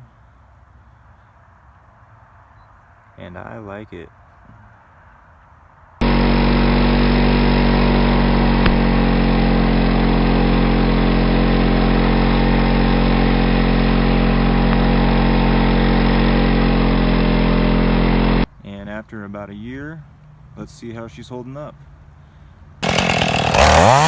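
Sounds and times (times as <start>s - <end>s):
chainsaw engine idling: 6.0s - 18.5s, 22.8s - 24.0s.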